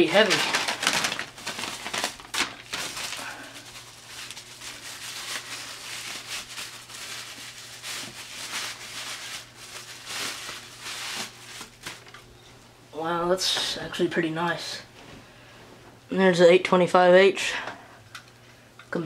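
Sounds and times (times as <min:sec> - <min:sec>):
packaging rustling and crinkling: 0:00.0 - 0:12.2.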